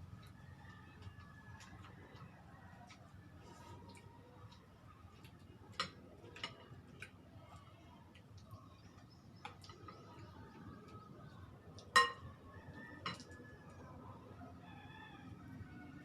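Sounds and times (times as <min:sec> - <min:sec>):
cutlery clinking against plates: 0:05.7 - 0:07.1, 0:11.9 - 0:12.3, 0:13.0 - 0:13.4.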